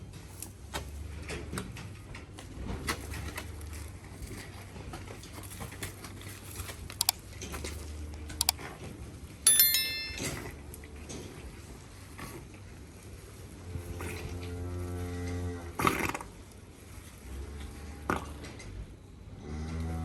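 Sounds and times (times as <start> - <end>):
ringing metal clang: 9.5 - 10.5.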